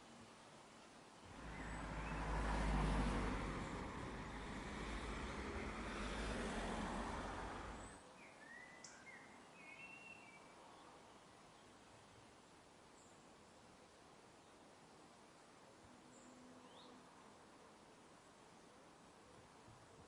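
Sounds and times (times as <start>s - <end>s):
faint background hiss: 0.0s - 20.0s
passing vehicle rumble: 1.3s - 8.0s
bird chirps: 7.8s - 10.5s.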